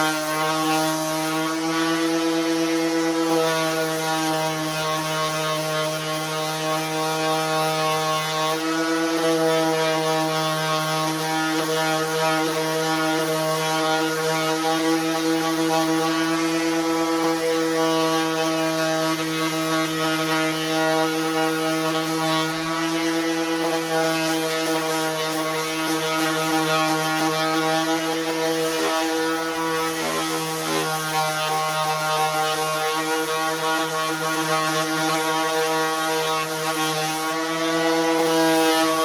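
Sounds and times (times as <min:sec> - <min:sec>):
electric orbital sander running: 0:00.0 - 0:39.0
sandpaper hissing on wood: 0:13.7 - 0:39.0.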